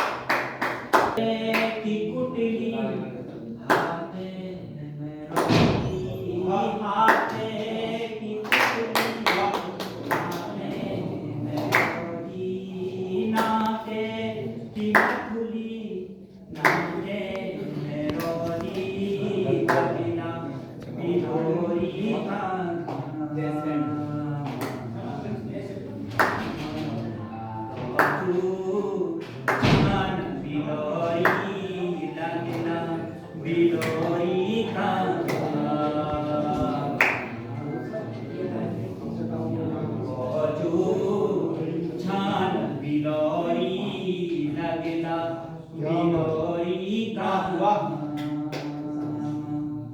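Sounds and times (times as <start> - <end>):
sharp handclaps: 0.0 - 1.7, 3.7 - 4.0, 7.1 - 7.5, 8.4 - 10.5, 11.5 - 12.1, 13.3 - 13.8, 14.8 - 15.3, 16.6 - 17.0, 26.1 - 26.9, 27.9 - 28.3, 35.2 - 35.6, 37.0 - 37.3
voices singing together: 0.0 - 49.9.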